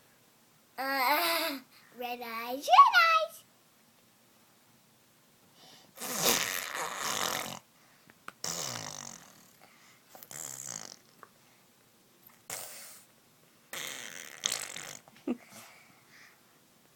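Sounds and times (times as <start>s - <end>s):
child blowing raspberries: 6.0s - 7.6s, 8.4s - 11.0s, 12.4s - 13.1s, 13.7s - 15.7s.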